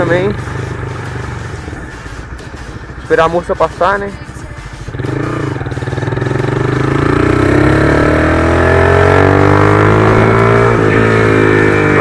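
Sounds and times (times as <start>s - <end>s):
motorcycle engine pulling away: 0.0s - 2.0s, 4.9s - 12.0s.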